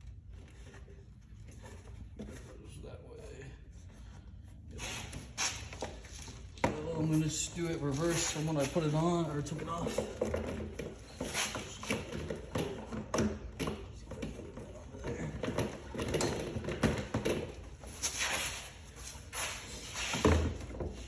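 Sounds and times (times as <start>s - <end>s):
tools and parts clicking and knocking: 10.0s - 17.7s.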